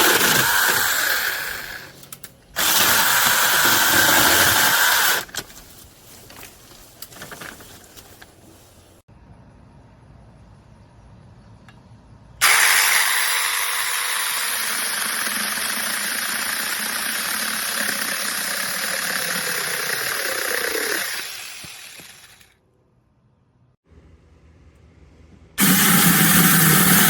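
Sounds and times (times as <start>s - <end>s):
mini chainsaw running: 0.0s - 2.0s, 2.6s - 5.3s, 12.4s - 22.5s, 25.6s - 27.0s.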